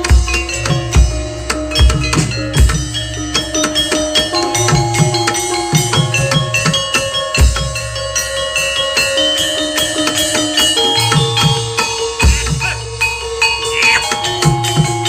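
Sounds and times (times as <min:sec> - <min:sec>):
deep heavy drum beats: 0:00.0 - 0:08.0, 0:11.0 - 0:15.0
metal keyed instruments ringing: 0:00.0 - 0:15.0.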